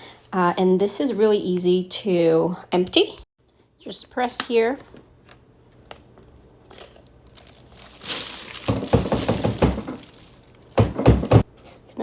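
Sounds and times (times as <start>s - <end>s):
debris pouring: 7.2s - 10.8s.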